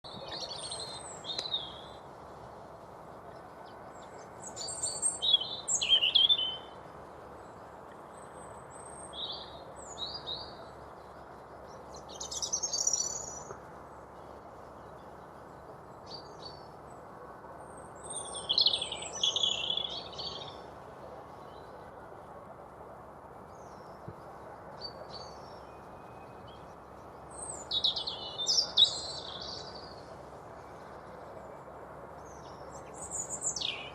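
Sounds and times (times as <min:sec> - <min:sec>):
robin singing: 0:00.0 - 0:02.0, 0:03.3 - 0:13.6, 0:17.6 - 0:20.7, 0:24.8 - 0:31.2, 0:32.2 - 0:33.9
faint background hiss: 0:00.1 - 0:33.9.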